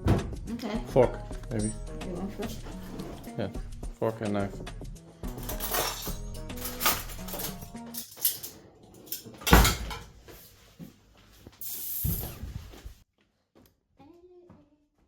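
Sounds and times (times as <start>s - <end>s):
heavy thump: 0.0s - 0.4s
rustling: 10.2s - 13.0s.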